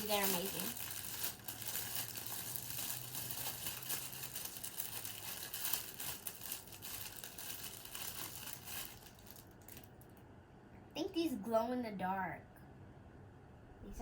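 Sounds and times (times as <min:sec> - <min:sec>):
plastic packaging crinkling: 0:00.0 - 0:10.2.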